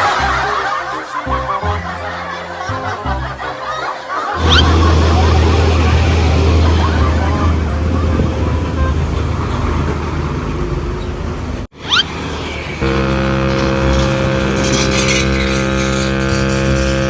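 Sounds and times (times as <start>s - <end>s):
rising whistle-like sweep: 4.4s - 9.9s
heavy vehicle engine rumbling: 4.4s - 16.4s
road traffic: 4.4s - 16.5s.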